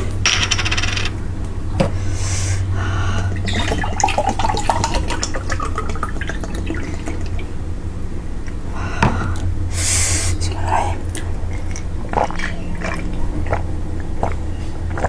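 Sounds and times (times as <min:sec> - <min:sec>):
juice pouring into a glass: 0:03.1 - 0:07.6.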